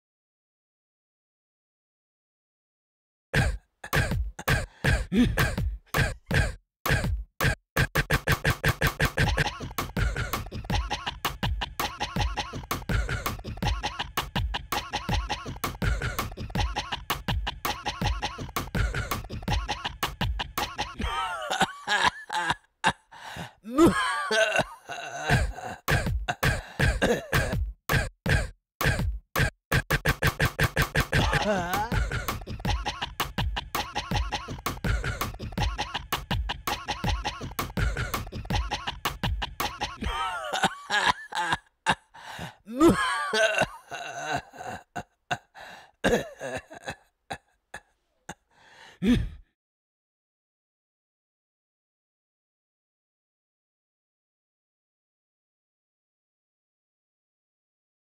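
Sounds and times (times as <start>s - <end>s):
coughing: 3.3s - 49.4s
throat-clearing: 3.4s - 49.4s
sharp gasping breaths: 4.4s - 6.0s, 22.9s - 23.8s, 26.4s - 27.0s, 42.0s - 42.8s, 45.4s - 46.0s, 47.8s - 49.5s
hip-hop track: 7.8s - 20.9s, 30.4s - 40.0s
groaning voice: 31.2s - 32.6s, 39.9s - 40.7s.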